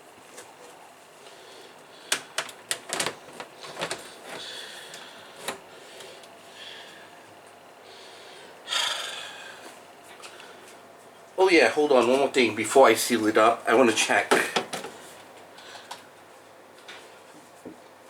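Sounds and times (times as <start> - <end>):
computer case panels knocking: 14.3 - 15.0.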